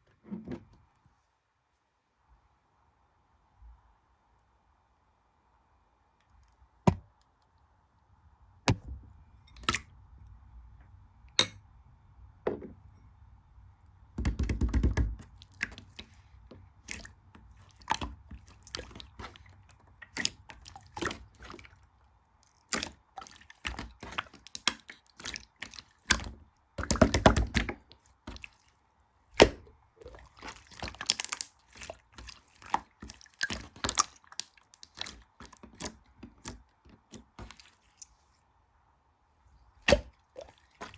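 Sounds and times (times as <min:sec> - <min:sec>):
dense crackling of slime: 0:14.3 - 0:28.6, 0:29.3 - 0:38.1.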